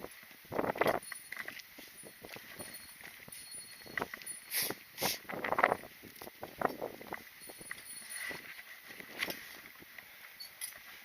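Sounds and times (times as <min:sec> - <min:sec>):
footsteps crunching on gravel: 0:00.0 - 0:10.2
wind buffeting microphone: 0:05.2 - 0:07.8.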